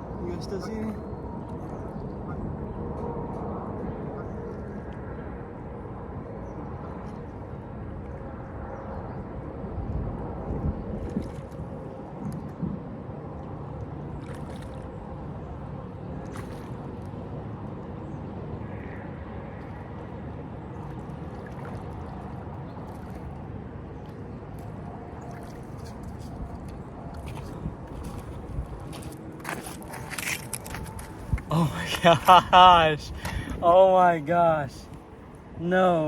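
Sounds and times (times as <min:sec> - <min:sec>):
wind: 0:00.0 - 0:36.0
flowing water: 0:10.9 - 0:36.0.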